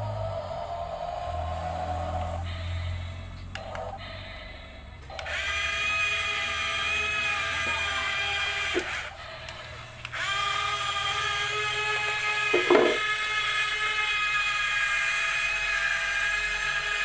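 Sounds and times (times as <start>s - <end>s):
small electric motor whining: 5.1s - 17.0s.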